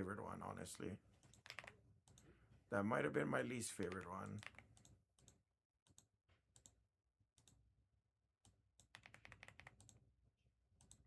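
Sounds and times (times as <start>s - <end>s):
typing on computer keyboard: 1.2s - 2.3s, 3.8s - 6.8s, 8.8s - 10.0s.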